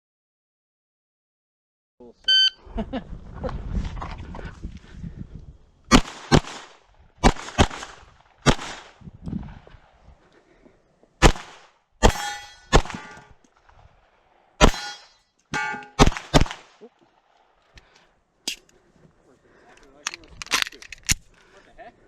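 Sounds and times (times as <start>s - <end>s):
pistol shots: 5.9s - 9.0s, 11.2s - 13.3s, 14.6s - 16.8s
metallic ringing of steel targets: 12.0s - 13.3s, 14.6s - 16.1s.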